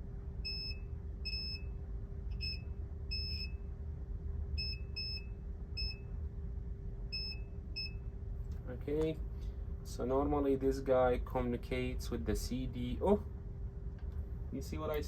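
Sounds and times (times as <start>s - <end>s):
steady low hum: 0.0s - 15.0s
multimeter continuity beeps: 0.4s - 3.7s, 4.5s - 6.2s, 7.1s - 8.1s.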